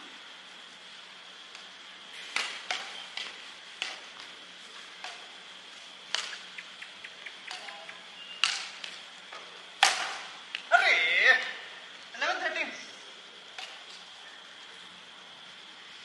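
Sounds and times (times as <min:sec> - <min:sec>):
racket smacking shuttlecock: 0:02.3 - 0:04.3, 0:06.1 - 0:06.5, 0:08.4 - 0:09.0, 0:09.8 - 0:10.7.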